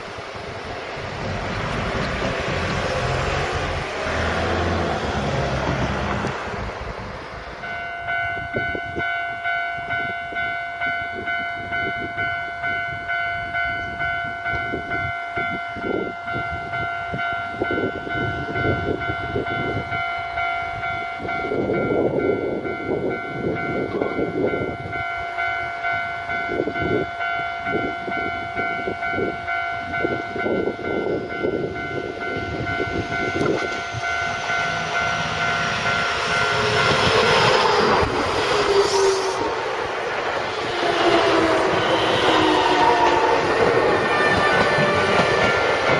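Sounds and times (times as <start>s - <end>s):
level crossing warning bell: 1.4s - 38.0s, 40.7s - 45.9s
train wheels clattering: 33.2s - 45.9s.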